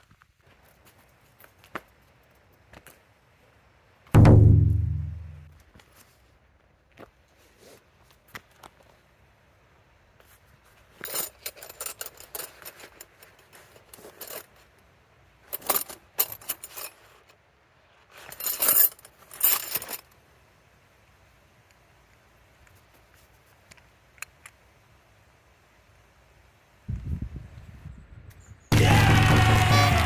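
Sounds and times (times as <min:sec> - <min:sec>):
small metal objects clinking: 0:11.0 - 0:14.6, 0:18.2 - 0:20.1.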